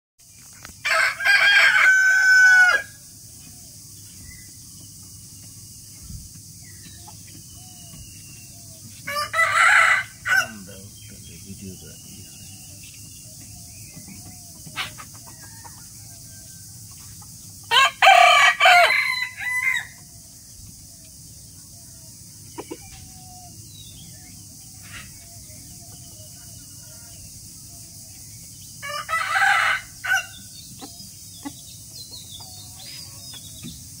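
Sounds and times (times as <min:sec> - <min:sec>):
rooster crowing: 0:00.8 - 0:03.0, 0:09.1 - 0:10.7, 0:17.7 - 0:20.0, 0:28.8 - 0:30.5.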